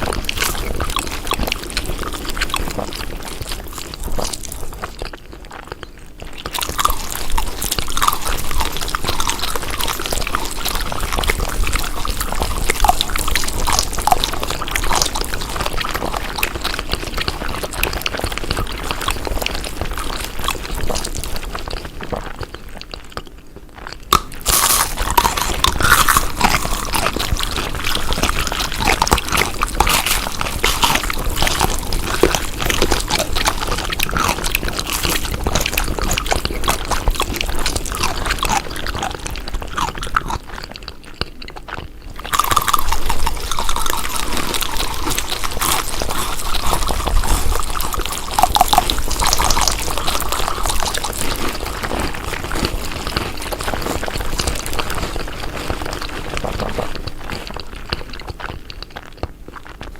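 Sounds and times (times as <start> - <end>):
chewing crunchy food: 0.0 - 59.9
mouth clicks: 23.9 - 40.5.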